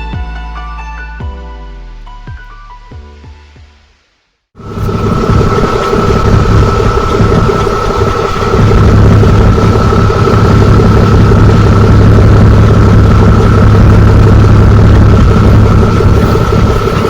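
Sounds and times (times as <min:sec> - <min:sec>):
large engine idling: 0:04.6 - 0:17.0.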